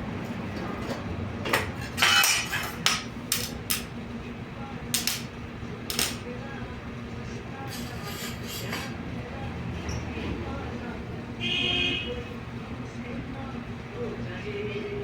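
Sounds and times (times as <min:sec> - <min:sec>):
tool clicks and metal knocks: 0:00.6 - 0:03.9, 0:04.9 - 0:05.3, 0:05.9 - 0:06.2.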